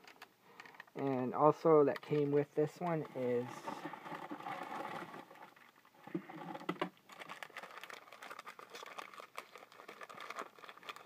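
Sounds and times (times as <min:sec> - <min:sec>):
packaging wrap crinkling: 0:02.9 - 0:11.0.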